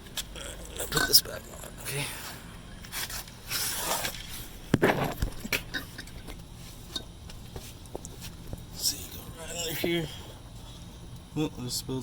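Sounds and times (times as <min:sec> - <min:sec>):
rustling and scraping: 0:02.8 - 0:08.7.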